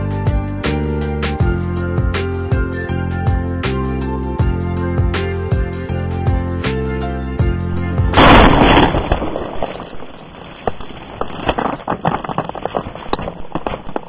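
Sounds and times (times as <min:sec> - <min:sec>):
background music: 0:00.0 - 0:08.6
loud rush of noise: 0:07.7 - 0:10.2.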